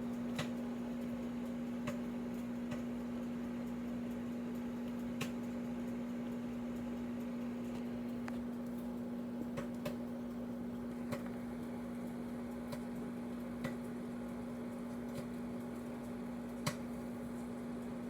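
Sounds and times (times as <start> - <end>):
microwave oven humming: 0.0 - 18.0
popcorn popping: 4.6 - 18.0.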